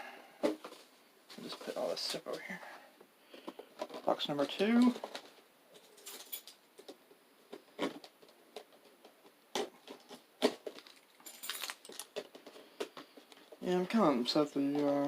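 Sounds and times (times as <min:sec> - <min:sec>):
plastic packaging rustling: 0:03.3 - 0:13.6.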